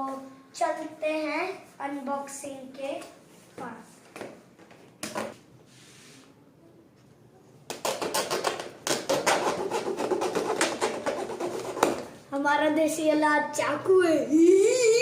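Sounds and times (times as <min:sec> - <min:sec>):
scraping on cardboard packaging: 0:09.1 - 0:12.0.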